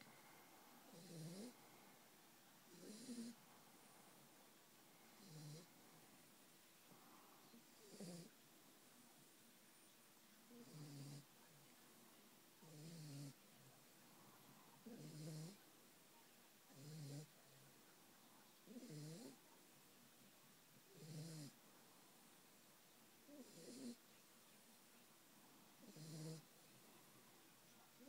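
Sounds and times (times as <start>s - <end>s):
dog snoring: 0.9s - 1.6s, 2.7s - 3.4s, 5.2s - 5.7s, 7.7s - 8.3s, 10.6s - 11.2s, 12.6s - 13.4s, 14.8s - 15.6s, 16.7s - 17.3s, 18.7s - 19.4s, 20.9s - 21.6s, 23.3s - 24.0s, 25.8s - 26.5s.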